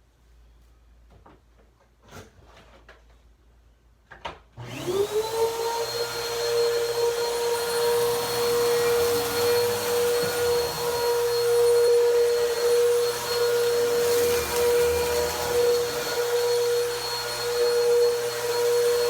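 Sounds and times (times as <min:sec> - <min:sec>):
vacuum cleaner running: 0:04.6 - 0:19.0.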